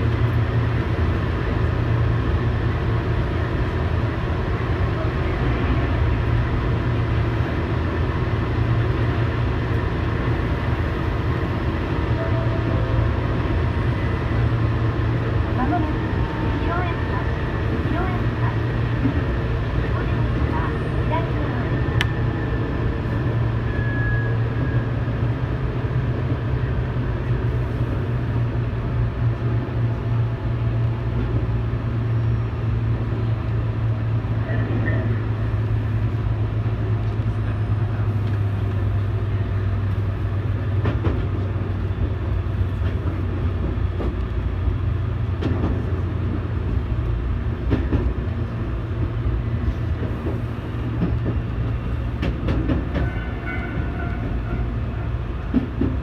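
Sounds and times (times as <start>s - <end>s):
train running hum: 0.0s - 56.0s
rail joint clicks: 6.2s - 22.5s, 34.3s - 56.0s.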